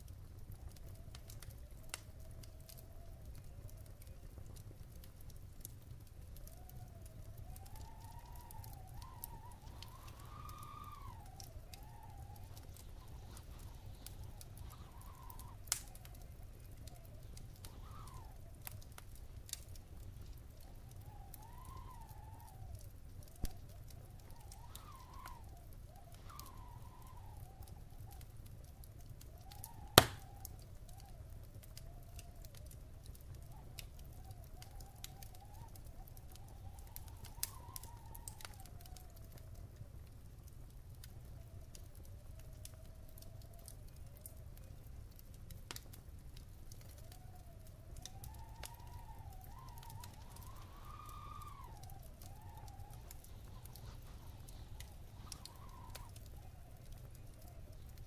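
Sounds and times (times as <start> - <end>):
wood fire crackling: 0.0 - 58.0
loud sharp pop: 30.0 - 30.3
faint wavering whine: 47.9 - 58.0.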